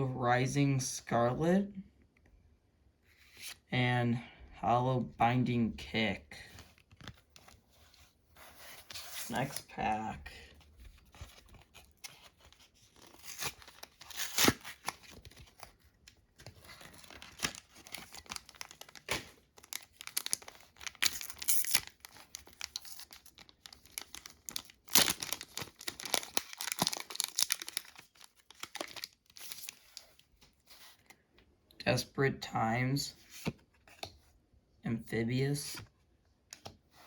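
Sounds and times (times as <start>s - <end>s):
wrapper tearing and crinkling: 11.3s - 15.7s, 16.7s - 30.0s.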